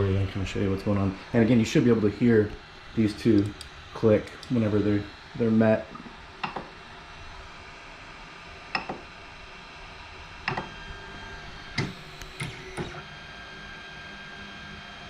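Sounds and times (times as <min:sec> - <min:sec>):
sharp clicks of limit switches: 0:06.4 - 0:06.7, 0:08.7 - 0:09.0
stepper motors whining: 0:10.4 - 0:13.1.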